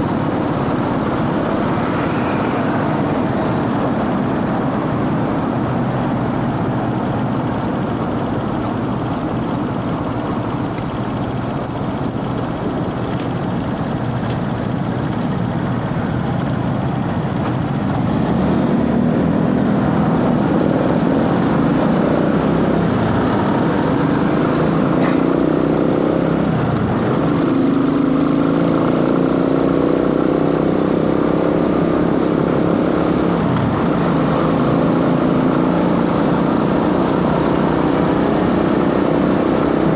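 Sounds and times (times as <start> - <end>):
motorcycle engine revving: 0.0 - 9.2, 17.2 - 39.9.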